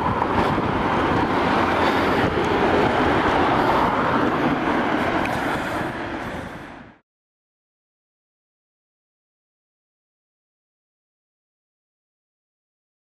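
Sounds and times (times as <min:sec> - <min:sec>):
bicycle road noise: 0:00.0 - 0:07.0
wind buffeting microphone: 0:00.0 - 0:07.0.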